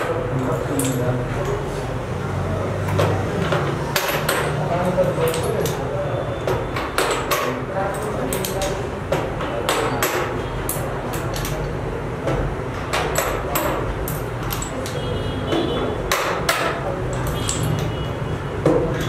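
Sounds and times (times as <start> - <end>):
small metal parts clicking: 0.0 - 1.6, 4.0 - 8.8, 10.0 - 11.8, 12.9 - 15.2, 16.1 - 18.2.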